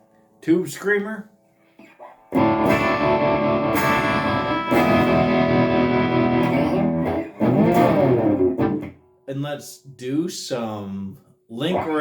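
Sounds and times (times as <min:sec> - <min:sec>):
overdriven electric guitar chords: 0:02.3 - 0:09.0.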